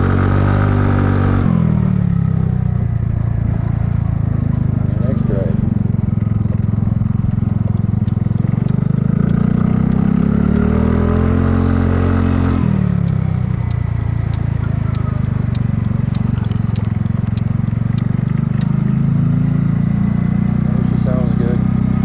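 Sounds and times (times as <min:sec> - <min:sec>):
scooter engine running: 0:00.0 - 0:22.0
light ticking: 0:06.2 - 0:19.2.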